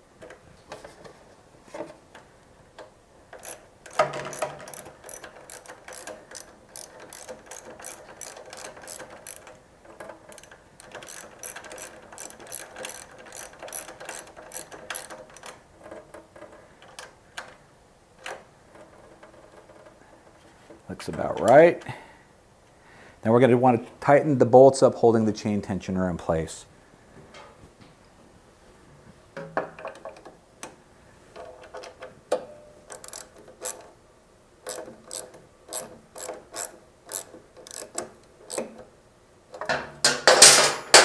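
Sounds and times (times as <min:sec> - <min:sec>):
ratchet wrench clicking: 0:03.4 - 0:09.5, 0:10.3 - 0:15.5, 0:32.9 - 0:33.8, 0:34.7 - 0:38.6.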